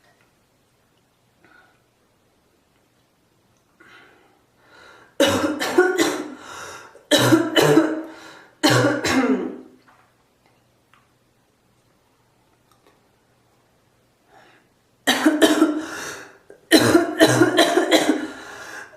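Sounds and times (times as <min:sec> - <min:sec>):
faint breaths: 0:03.8 - 0:05.2, 0:06.4 - 0:07.0, 0:08.1 - 0:08.6, 0:14.2 - 0:14.8, 0:18.2 - 0:18.9
person hacking coughs: 0:05.2 - 0:06.4, 0:07.1 - 0:08.0, 0:08.6 - 0:09.6, 0:15.1 - 0:15.8, 0:16.7 - 0:18.3.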